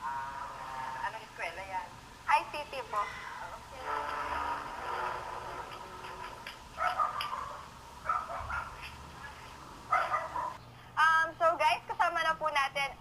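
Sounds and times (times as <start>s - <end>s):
dog barking: 6.8s - 8.9s, 9.9s - 10.6s.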